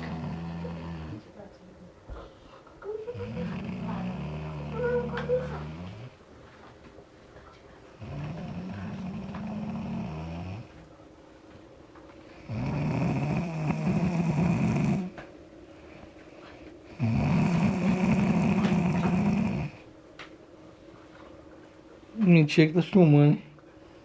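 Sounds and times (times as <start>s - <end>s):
ox snoring: 0.0s - 1.3s, 3.1s - 6.2s, 8.0s - 10.8s, 12.4s - 15.1s, 16.9s - 19.8s.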